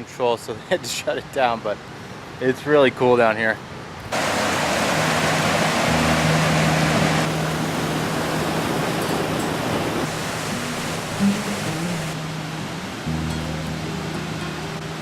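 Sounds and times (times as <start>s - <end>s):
waterfall rushing: 4.1s - 15.0s.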